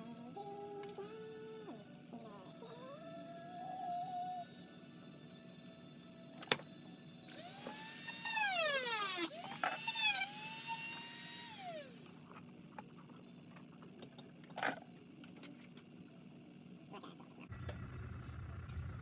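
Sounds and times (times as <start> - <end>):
rotary tool whining: 7.2 - 12.2.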